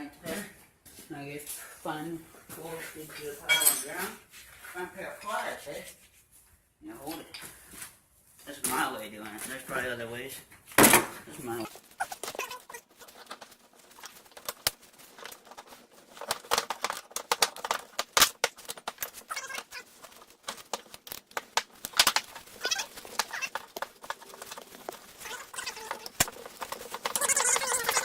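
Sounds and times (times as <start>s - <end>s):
short squeaks: 27.0s - 28.0s.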